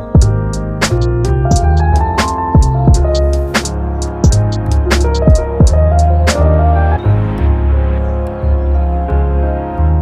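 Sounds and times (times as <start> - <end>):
instrumental background music: 0.0 - 10.0.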